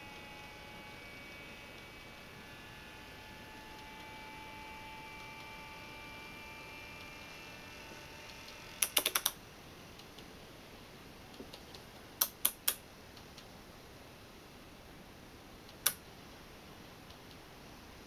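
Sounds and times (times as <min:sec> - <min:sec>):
model train motor whine: 0:00.0 - 0:08.8
sharp clicks: 0:08.3 - 0:09.4, 0:11.3 - 0:13.5, 0:15.7 - 0:16.0.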